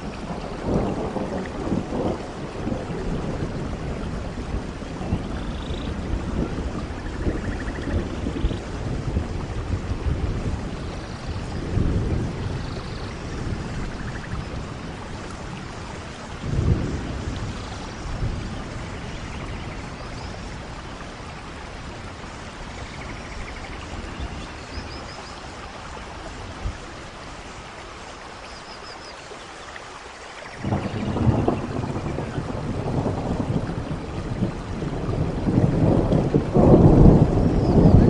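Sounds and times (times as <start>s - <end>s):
low rolls of thunder: 0.0s - 27.8s, 30.4s - 38.0s
steady rain falling: 0.0s - 38.0s
sharp thunder crack: 30.6s - 38.0s.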